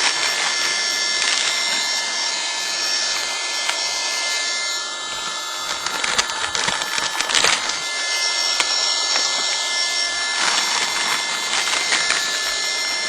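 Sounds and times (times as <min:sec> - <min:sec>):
air pump fan whirring: 0:00.0 - 0:13.0
crackling and knocks: 0:05.2 - 0:09.6.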